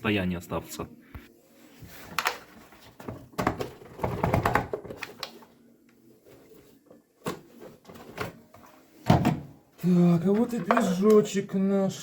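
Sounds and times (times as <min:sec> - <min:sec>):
plastic parts clattering: 0:02.2 - 0:05.4.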